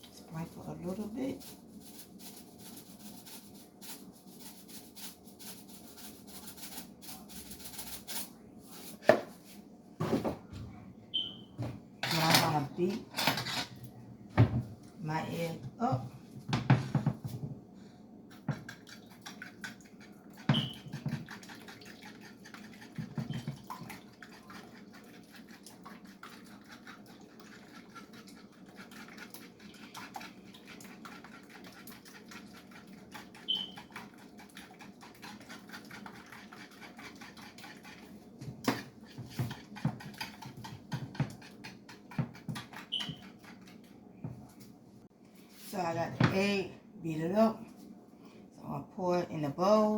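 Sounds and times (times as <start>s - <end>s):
eggs beaten in a bowl: 0.0s - 8.4s, 18.3s - 44.6s.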